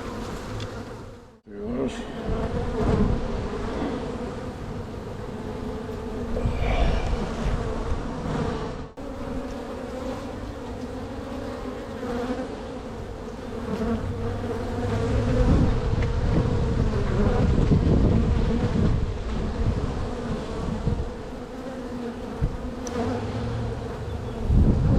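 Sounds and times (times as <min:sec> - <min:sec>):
honeybees buzzing: 0:00.0 - 0:24.9
low rumble: 0:06.3 - 0:08.0.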